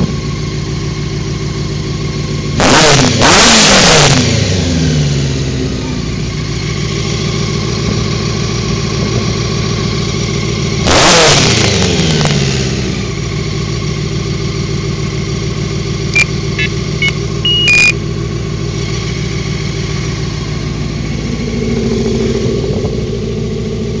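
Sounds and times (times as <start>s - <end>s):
motorcycle engine idling and revving: 0.0s - 24.0s
short high-pitched chirps: 16.2s - 18.0s.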